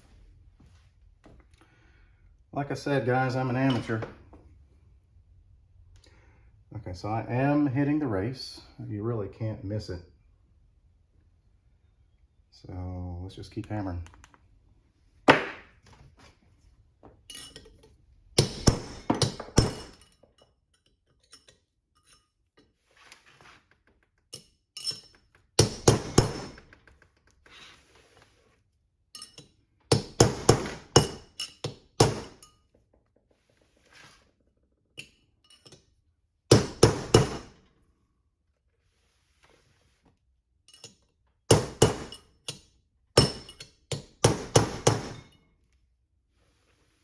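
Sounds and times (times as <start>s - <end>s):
hammer striking steel punch: 25.6s - 26.6s, 32.0s - 32.4s, 36.5s - 37.6s, 41.5s - 42.2s, 43.2s - 45.3s.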